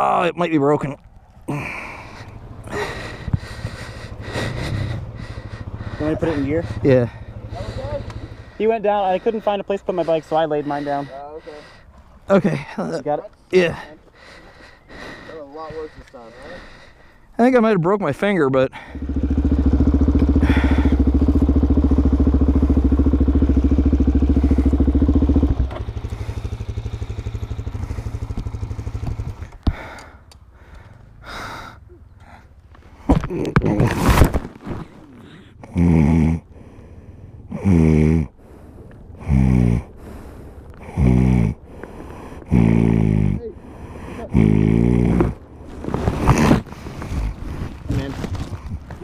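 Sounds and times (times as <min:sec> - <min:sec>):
motorcycle engine running: 0:01.6 - 0:11.8, 0:18.8 - 0:30.0, 0:35.8 - 0:49.0
loud snoring: 0:35.6 - 0:36.5, 0:37.5 - 0:38.4, 0:39.2 - 0:39.9, 0:40.8 - 0:41.6, 0:42.4 - 0:43.4, 0:44.1 - 0:45.4.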